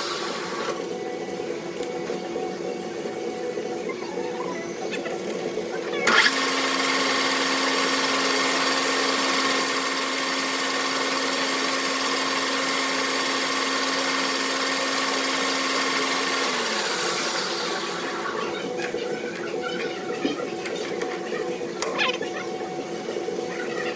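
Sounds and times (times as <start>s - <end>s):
machine tool motor humming: 5.4s - 19.0s.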